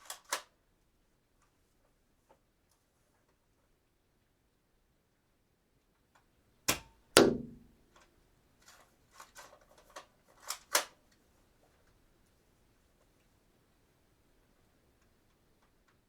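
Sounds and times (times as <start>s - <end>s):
dart gun shots: 6.7s - 7.7s.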